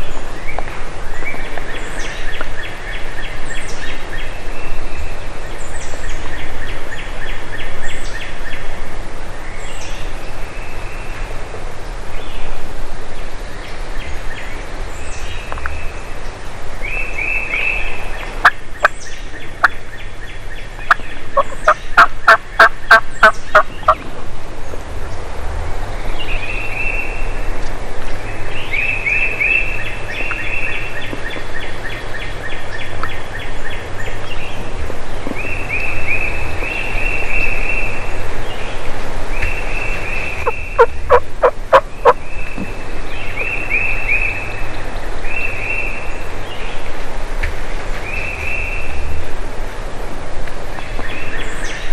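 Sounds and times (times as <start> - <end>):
turkey gobbling: 20.9 - 24.0, 40.4 - 42.2.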